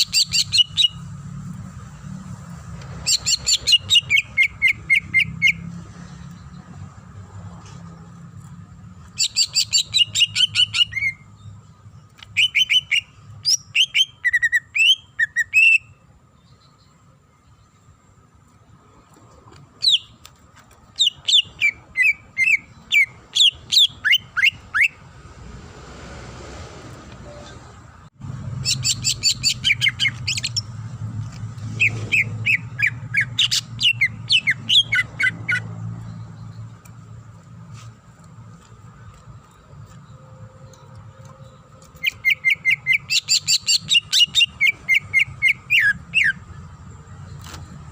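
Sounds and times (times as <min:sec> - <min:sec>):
bird whistling and chirping: 0:12.2 - 0:16.0, 0:21.0 - 0:25.0, 0:28.6 - 0:30.7, 0:31.8 - 0:35.7, 0:42.0 - 0:46.4.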